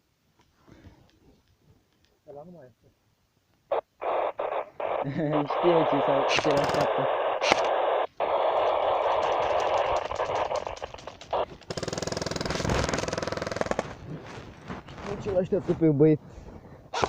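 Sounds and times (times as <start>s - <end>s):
airsoft gun firing bursts: 6.3s - 7.8s, 8.4s - 14.0s.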